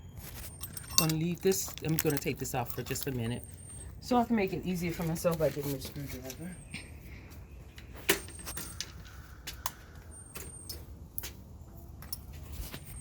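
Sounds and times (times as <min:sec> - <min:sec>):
hand tools clinking: 0:00.3 - 0:04.1.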